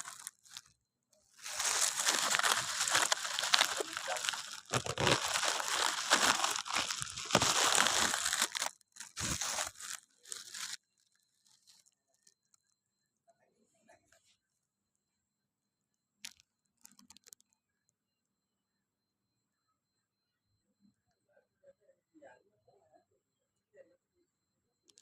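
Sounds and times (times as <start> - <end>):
crinkling and crunching: 0.0 - 0.7, 1.4 - 10.8.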